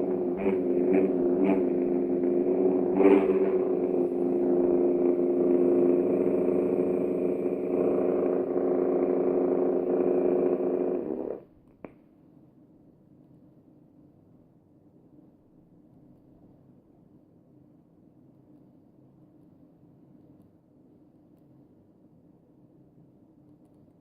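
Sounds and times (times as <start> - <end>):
lightsaber buzzy synthesized hum: 0.0 - 11.4.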